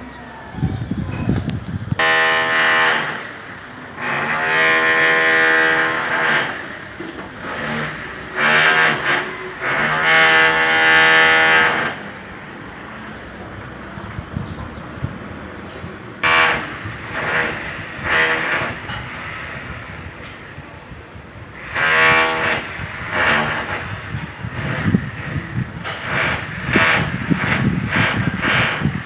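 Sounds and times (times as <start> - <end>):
demolition hammer breaking concrete: 2.0 - 12.1, 21.6 - 29.0.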